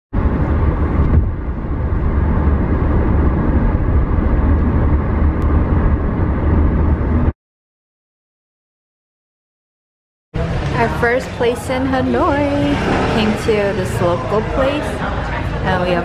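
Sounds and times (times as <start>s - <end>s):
motorbike and car traffic: 10.4s - 16.0s.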